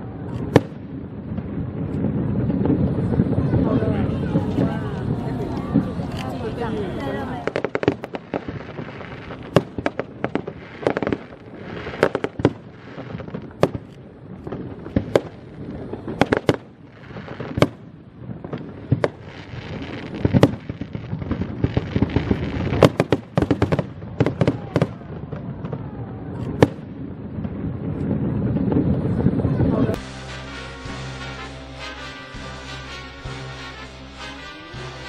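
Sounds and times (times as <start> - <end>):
continuous rumble: 0.0 - 19.6
fireworks cracks and bangs: 0.0 - 35.0.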